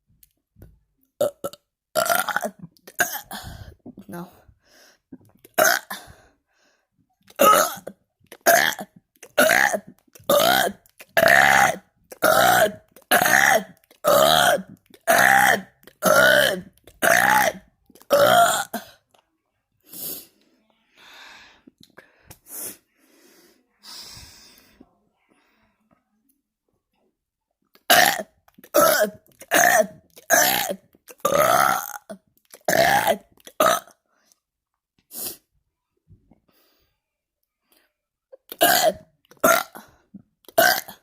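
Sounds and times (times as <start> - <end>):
person burping loudly: 1.2 - 3.6, 5.4 - 6.2, 7.3 - 19.0, 27.8 - 34.0, 38.4 - 41.0.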